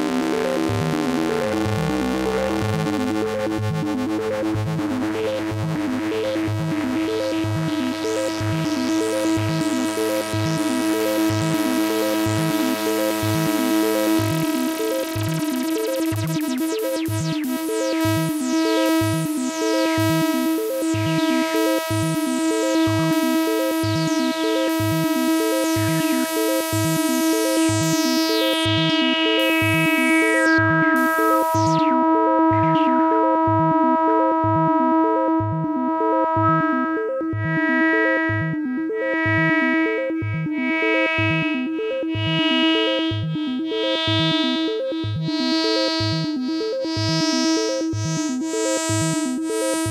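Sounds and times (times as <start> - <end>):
low synthesizer pulse: 0.0 - 49.9
bright synthesizer drone: 4.2 - 46.4
falling synthesizer sweeps: 13.8 - 22.6, 27.4 - 33.0.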